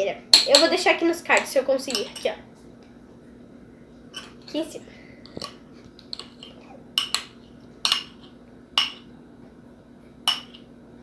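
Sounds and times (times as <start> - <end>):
spoon tapping a bowl: 5.4 - 8.2, 8.8 - 9.1, 10.3 - 10.7.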